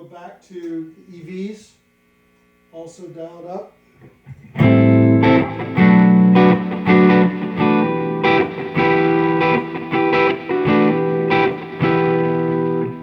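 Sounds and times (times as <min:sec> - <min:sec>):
clean electric guitar: 0:04.0 - 0:13.0.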